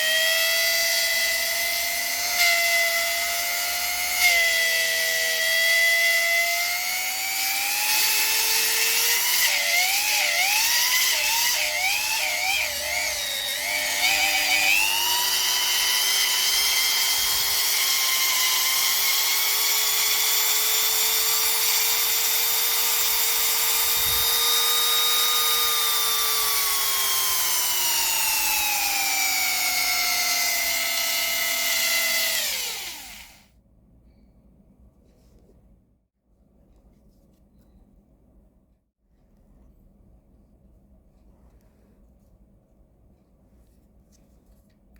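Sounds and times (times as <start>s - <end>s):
rotary tool motor whining: 0.0s - 33.4s.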